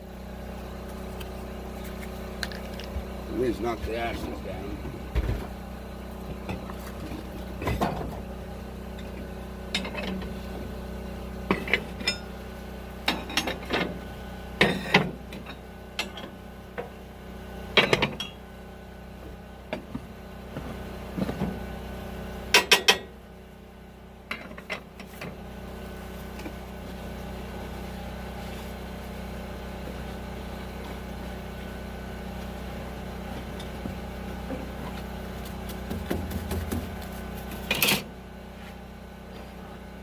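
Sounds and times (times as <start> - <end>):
metal tool clanking in wood stove: 11.5 - 12.3, 13.1 - 14.0, 14.6 - 16.4, 17.8 - 18.4, 22.5 - 23.1.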